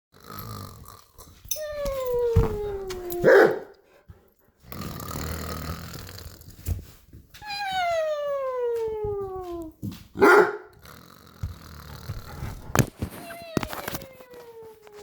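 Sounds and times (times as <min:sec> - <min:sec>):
rasping snore: 0:00.2 - 0:01.2, 0:04.7 - 0:06.7, 0:10.8 - 0:12.9.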